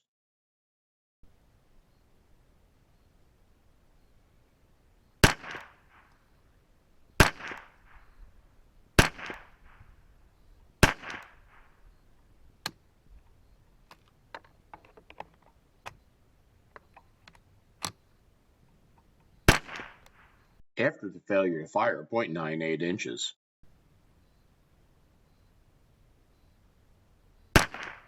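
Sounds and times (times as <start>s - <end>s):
rifle shots with echo: 5.2s - 6.2s, 7.2s - 8.2s, 9.0s - 10.0s, 10.8s - 11.8s, 19.5s - 20.4s, 27.5s - 28.0s
small metallic clicks and rattles: 12.6s - 16.0s.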